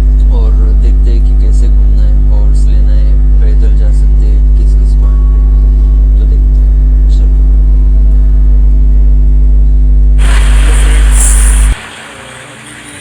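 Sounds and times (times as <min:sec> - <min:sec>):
loud low hum: 0:00.0 - 0:13.0
loud hiss: 0:10.2 - 0:13.0.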